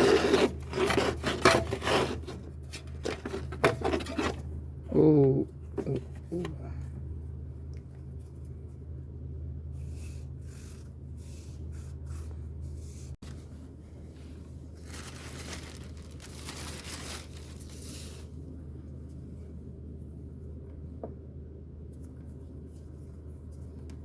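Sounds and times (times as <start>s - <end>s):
scraping and rustling: 0.0s - 4.5s, 14.1s - 18.4s.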